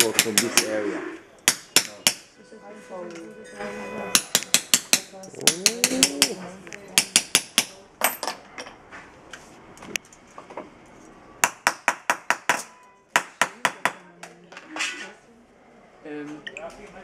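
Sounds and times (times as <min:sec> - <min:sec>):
hammer tapping on copper: 0:00.0 - 0:00.7, 0:01.4 - 0:02.3, 0:04.1 - 0:08.2.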